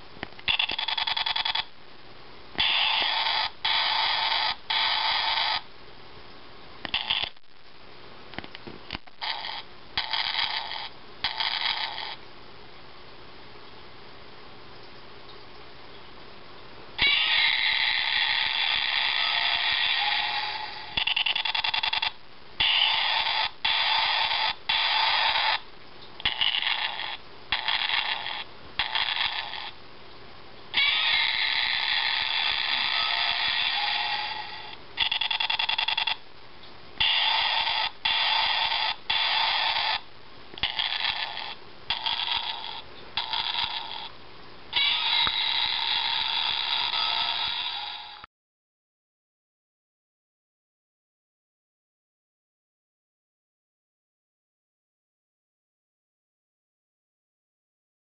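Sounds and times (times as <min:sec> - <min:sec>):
toy monster sound effects: 0:00.5 - 0:01.7, 0:02.6 - 0:05.6, 0:06.9 - 0:07.4, 0:09.1 - 0:12.2, 0:17.0 - 0:25.6, 0:26.2 - 0:29.8, 0:30.8 - 0:36.2, 0:37.0 - 0:40.0, 0:40.6 - 0:44.1, 0:44.7 - 0:48.3.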